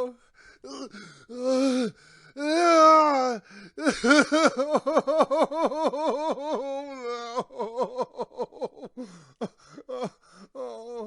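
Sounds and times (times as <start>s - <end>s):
man sobbing and wailing: 0.0s - 11.0s.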